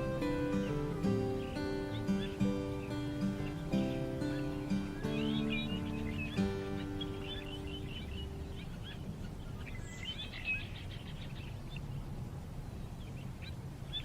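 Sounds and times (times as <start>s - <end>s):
held music chord: 0.0s - 9.6s
small birds chirping: 0.0s - 14.0s.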